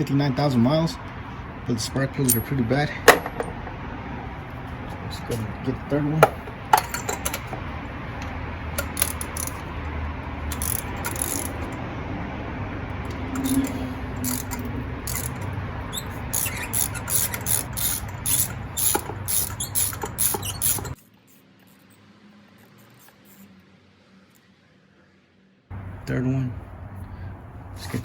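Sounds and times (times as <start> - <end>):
ratchet clicking: 6.7 - 9.8, 10.4 - 11.8, 13.0 - 21.8.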